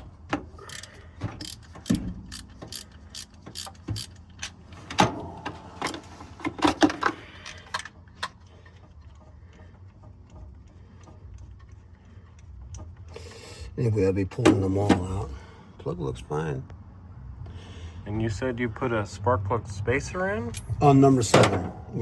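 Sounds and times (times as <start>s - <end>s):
ratchet wrench clicking: 0.6s - 4.6s
metal tools clinking: 0.6s - 9.2s, 20.4s - 21.7s.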